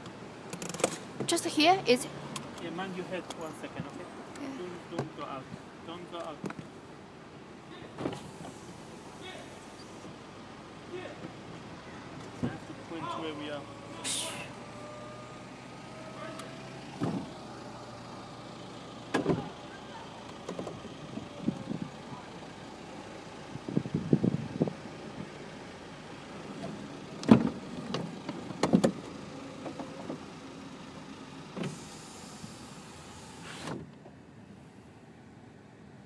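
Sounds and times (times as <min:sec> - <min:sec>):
brief hiss: 0:14.0 - 0:14.6, 0:31.6 - 0:33.8.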